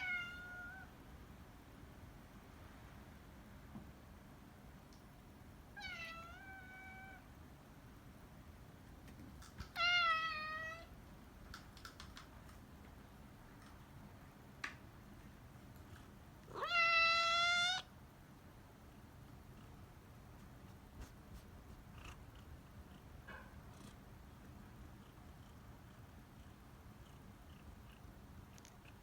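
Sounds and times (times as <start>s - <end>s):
cat meowing: 0.0s - 0.9s, 5.8s - 7.2s, 9.7s - 10.9s, 16.5s - 17.9s.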